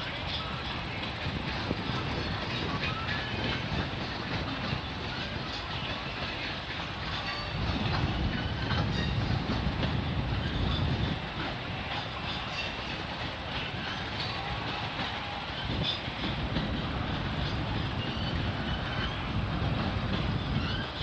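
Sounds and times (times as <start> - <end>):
high wheel squeals: 10.1 - 21.0.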